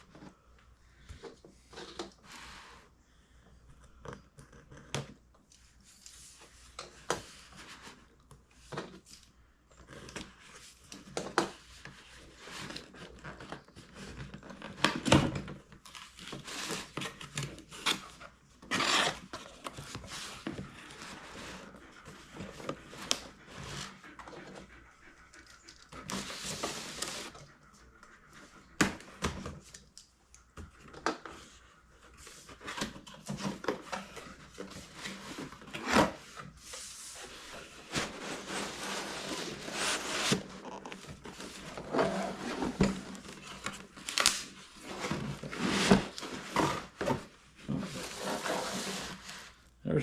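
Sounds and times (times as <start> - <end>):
packaging rustling and scraping: 9.9 - 24.7, 26.0 - 27.4, 30.8 - 49.6.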